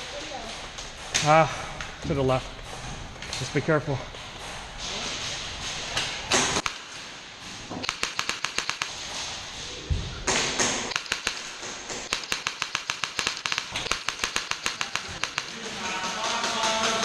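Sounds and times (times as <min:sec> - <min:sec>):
airsoft guns firing bursts: 0:06.3 - 0:07.2, 0:07.8 - 0:09.0, 0:10.3 - 0:17.0.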